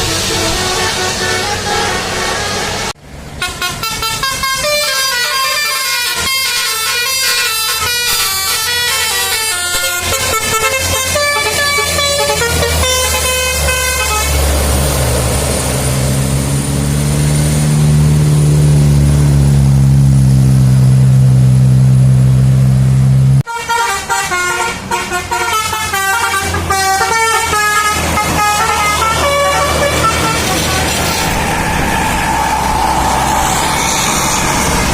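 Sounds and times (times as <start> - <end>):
musical air horns playing a tune: 0.0 - 14.4, 23.4 - 31.3
bus engine running: 0.0 - 34.9.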